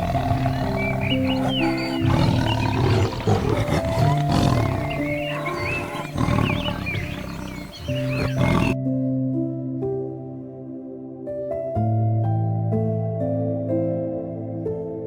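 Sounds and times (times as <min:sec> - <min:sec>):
high chirping calls: 0:00.0 - 0:08.8
large wild cat roaring: 0:00.0 - 0:08.8.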